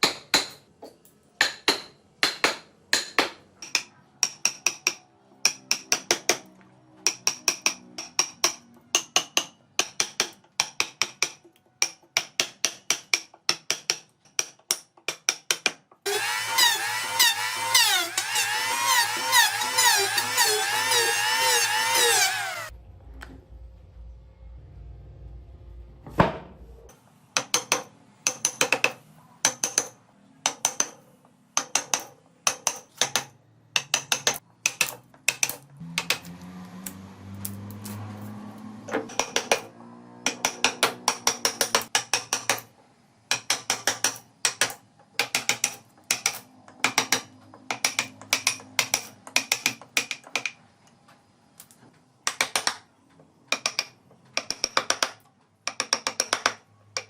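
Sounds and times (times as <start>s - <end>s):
low hum: 22.4s - 26.9s.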